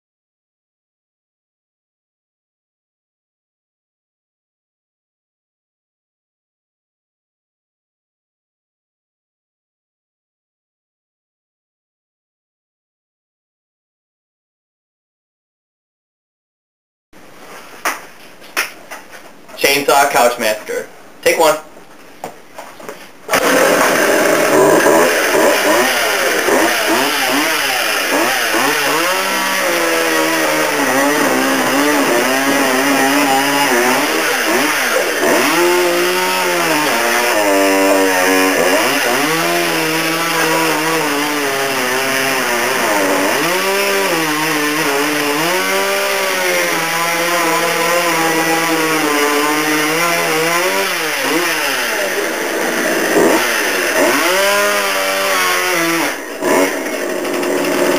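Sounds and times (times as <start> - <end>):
chainsaw revving and bogging: 23.3 - 57.9.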